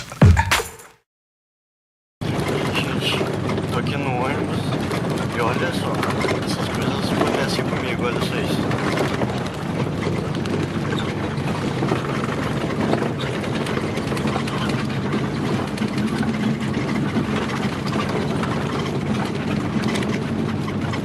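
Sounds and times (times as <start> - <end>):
bus engine drone: 2.2 - 21.0
road noise: 2.2 - 21.0.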